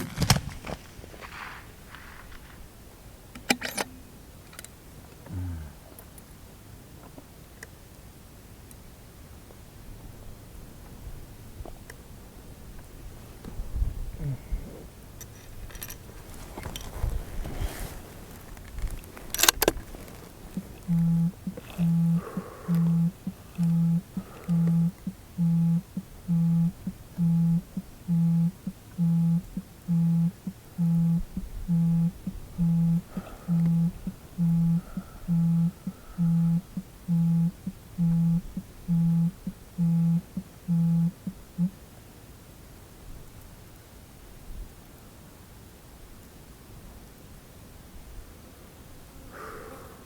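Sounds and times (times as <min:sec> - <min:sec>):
mobile phone vibrating: 0:20.4 - 0:41.8.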